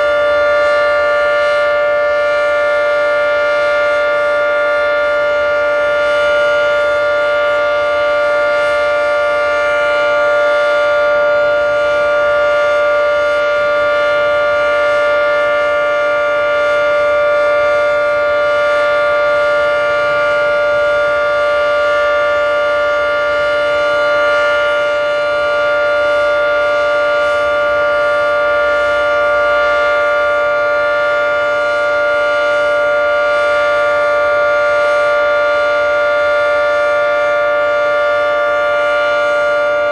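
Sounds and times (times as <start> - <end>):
outdoor warning siren: 0.0 - 39.9.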